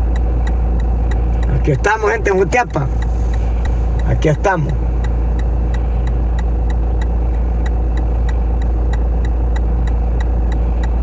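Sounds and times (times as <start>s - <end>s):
engine idling: 0.0s - 11.0s
faint regular ticking: 0.0s - 11.0s.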